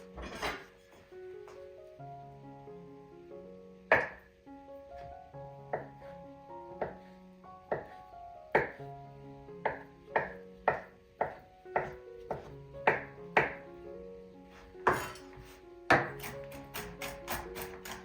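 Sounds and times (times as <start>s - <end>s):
soft instrumental music: 0.0s - 18.0s
knife chopping on cutting board: 6.8s - 7.0s, 7.7s - 8.0s, 8.6s - 8.8s, 9.7s - 13.6s, 14.9s - 15.2s, 15.9s - 18.0s.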